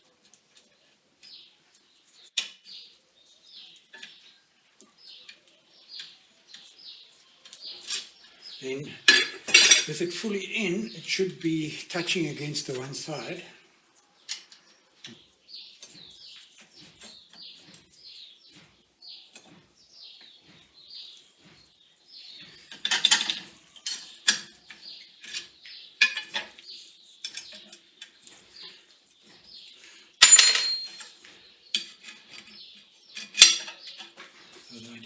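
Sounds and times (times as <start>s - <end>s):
metal parts clinking: 9.1s - 10.0s, 30.2s - 31.2s
loud ringing metal clank: 30.2s - 31.0s.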